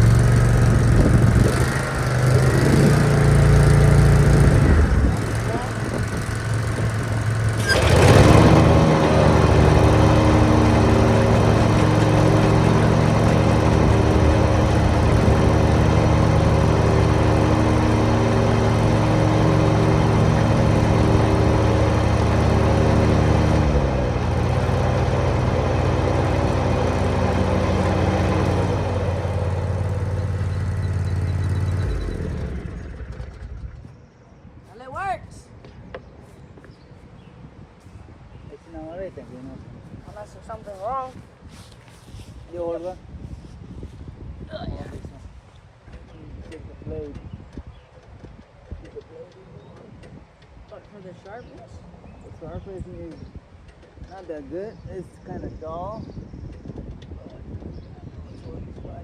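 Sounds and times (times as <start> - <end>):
lawn mower engine running: 0.0 - 34.0, 34.7 - 44.1.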